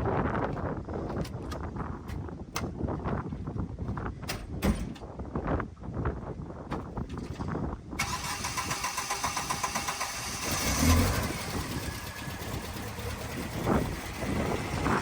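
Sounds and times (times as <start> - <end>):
car engine starting and idling: 8.0 - 15.0.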